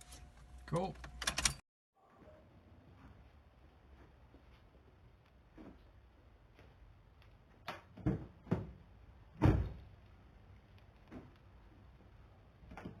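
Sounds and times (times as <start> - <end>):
heavy door thump: 9.4 - 9.8.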